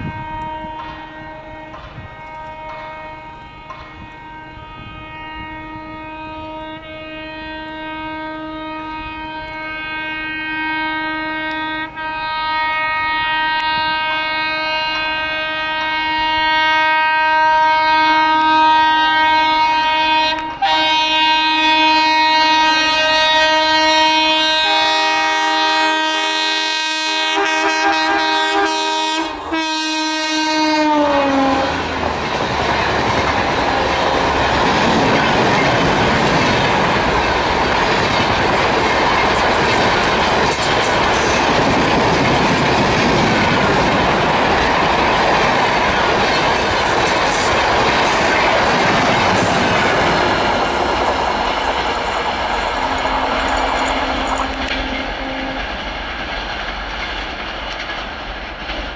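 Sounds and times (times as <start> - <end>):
locomotive horn blast: 0.0 - 32.1, 53.0 - 55.8
train coaches rumbling on rails: 0.0 - 58.9.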